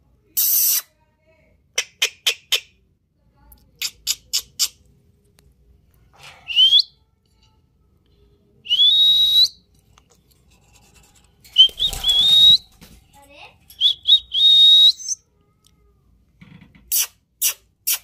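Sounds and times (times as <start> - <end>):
parrot rising whistles: 6.5 - 6.9, 11.6 - 12.7.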